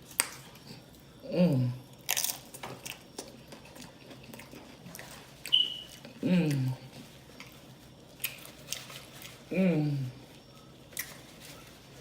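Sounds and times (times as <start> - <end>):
person humming mmm: 1.2 - 1.8, 6.2 - 6.9, 9.5 - 10.2
crunching chips: 1.9 - 6.7, 7.4 - 9.5.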